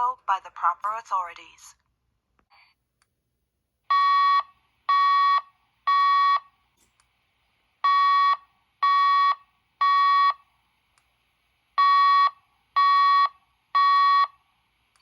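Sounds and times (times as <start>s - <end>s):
fire alarm beeps: 3.9s - 6.5s, 7.8s - 10.4s, 11.8s - 14.4s.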